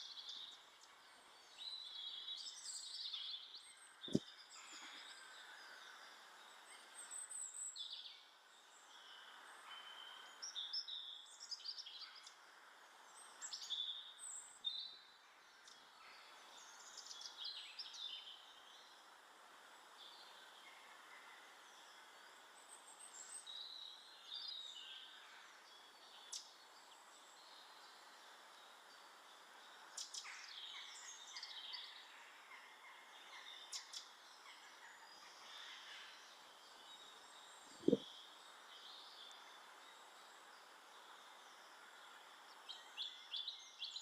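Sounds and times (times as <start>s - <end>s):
faint steady hiss: 0.0s - 44.0s
birds chirping: 28.8s - 39.4s.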